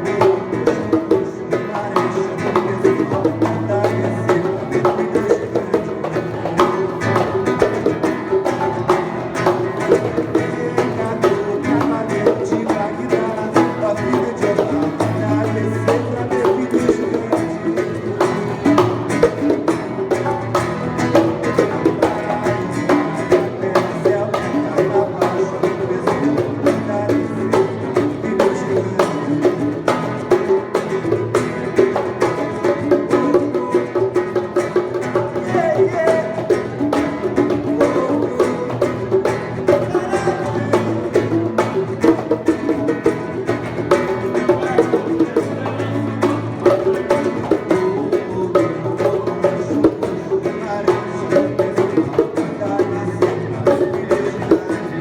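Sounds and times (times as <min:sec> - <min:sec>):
bongos: 0:00.0 - 0:55.0
nylon-string acoustic guitar: 0:00.0 - 0:55.0.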